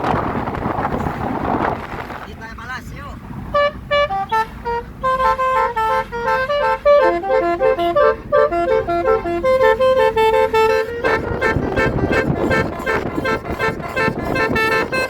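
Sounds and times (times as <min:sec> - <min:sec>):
musical horn playing a tune: 0:03.5 - 0:15.0.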